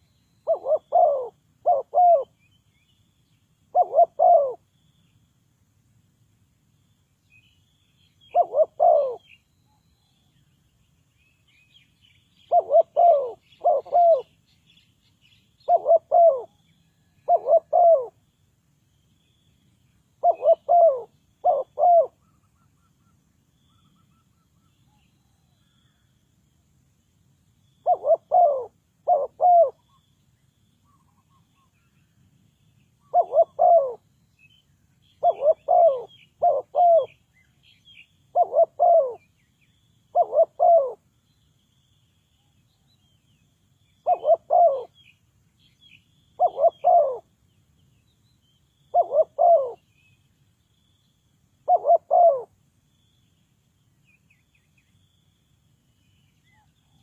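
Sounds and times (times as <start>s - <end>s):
dove cooing: 0.0s - 2.4s, 3.7s - 4.6s, 8.2s - 9.4s, 12.5s - 14.3s, 15.6s - 16.6s, 17.2s - 18.2s, 20.2s - 22.4s, 27.8s - 29.9s, 33.0s - 34.0s, 35.2s - 37.2s, 38.3s - 39.3s, 40.1s - 41.0s, 44.0s - 45.0s, 46.4s - 47.3s, 48.9s - 49.8s, 51.6s - 52.6s
small birds chirping: 0.0s - 5.6s, 6.7s - 26.6s, 27.2s - 57.0s.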